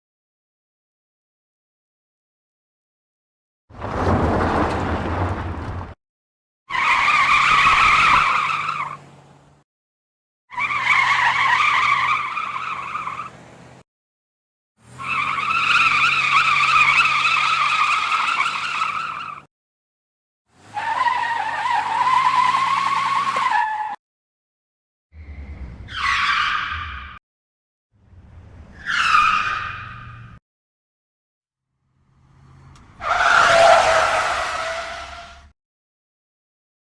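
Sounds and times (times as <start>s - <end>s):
scrubbing tyre skid: 3.7s - 6.0s, 6.7s - 9.2s, 10.6s - 13.6s, 14.9s - 19.5s, 20.6s - 24.0s, 32.8s - 35.5s
high-pitched tyre squeals: 6.7s - 9.1s, 10.5s - 13.4s, 14.8s - 19.5s, 20.6s - 24.0s, 25.2s - 27.2s, 28.3s - 30.4s, 32.1s - 35.5s.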